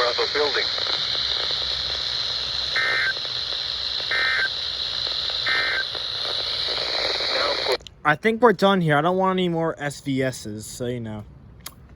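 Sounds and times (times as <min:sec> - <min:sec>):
radio hiss: 0:00.0 - 0:07.8
two-tone digital data bursts: 0:00.0 - 0:07.8.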